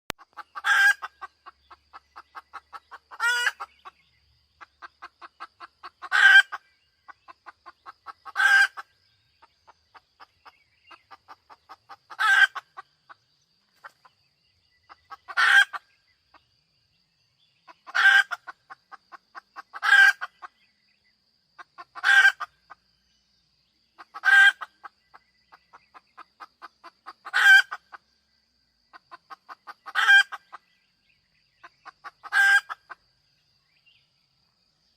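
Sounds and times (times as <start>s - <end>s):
hen cackling: 0.2s - 4.0s, 4.6s - 13.2s, 14.9s - 15.9s, 17.7s - 20.6s, 21.6s - 22.7s, 24.0s - 28.0s, 28.9s - 30.6s, 31.6s - 33.0s.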